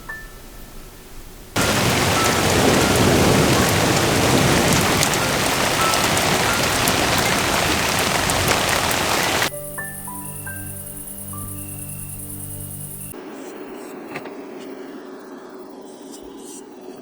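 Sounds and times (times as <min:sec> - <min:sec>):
water rushing: 0:01.6 - 0:09.5.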